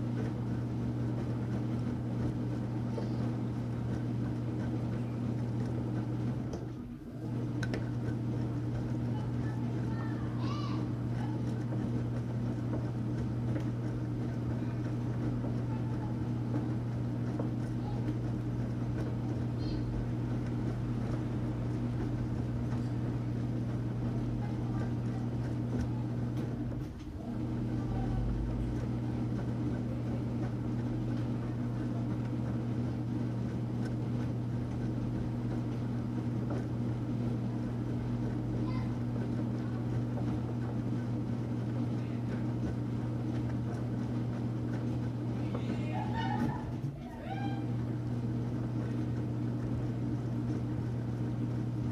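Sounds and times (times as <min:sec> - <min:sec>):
washing machine motor humming: 0:00.0 - 0:51.9.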